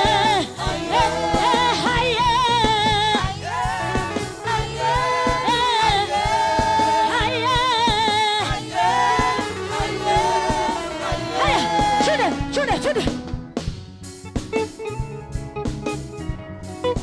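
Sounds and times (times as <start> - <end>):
person singing gospel with vibrato: 0.0 - 13.3
instrumental backing: 0.0 - 17.0.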